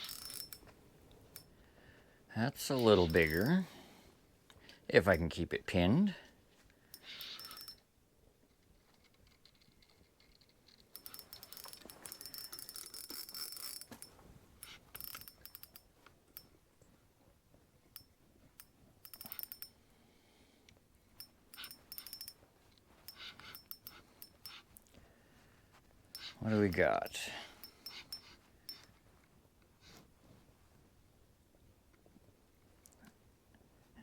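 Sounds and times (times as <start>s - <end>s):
fishing reel clicking: 0.0s - 0.7s, 2.7s - 3.6s, 6.9s - 7.8s, 9.5s - 16.4s, 18.0s - 19.7s, 21.2s - 22.4s, 23.0s - 24.6s, 26.1s - 28.9s.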